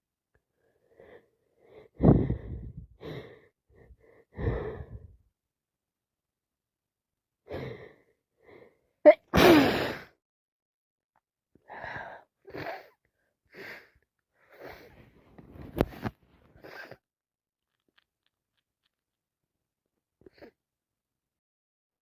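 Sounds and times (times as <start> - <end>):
person breathing: 0.6 - 5.2, 11.7 - 16.0
person sneezing: 9.1 - 10.1.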